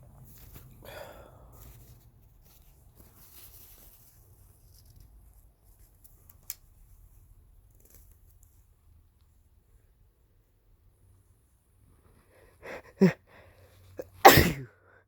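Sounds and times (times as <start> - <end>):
man sniffing: 12.6 - 14.6.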